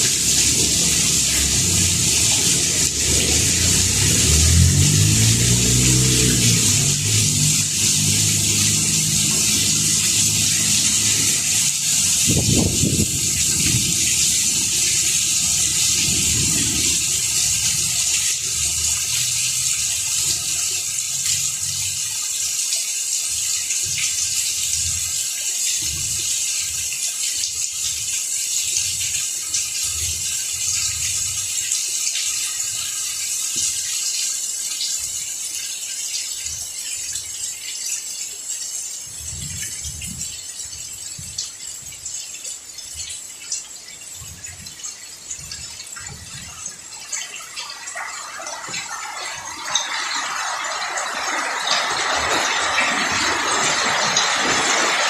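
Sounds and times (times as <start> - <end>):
low rumble: 0.0 - 13.8
rain falling on leaves: 0.0 - 55.0.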